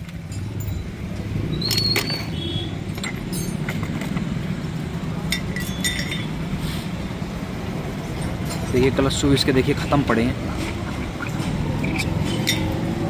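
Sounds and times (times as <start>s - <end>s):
metal parts clinking: 1.6s - 4.4s, 5.2s - 6.5s, 10.6s - 13.0s.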